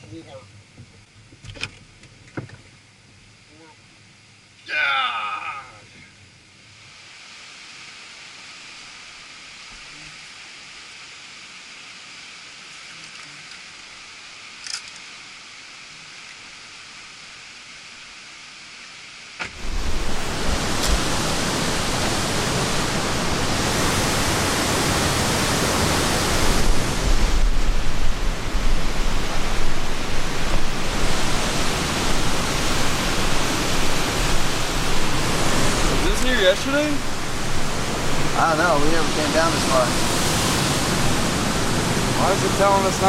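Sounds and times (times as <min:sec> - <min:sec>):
faint steady hiss: 0:00.0 - 0:43.0
waterfall rushing: 0:13.6 - 0:43.0
deep low rumble: 0:19.6 - 0:36.1.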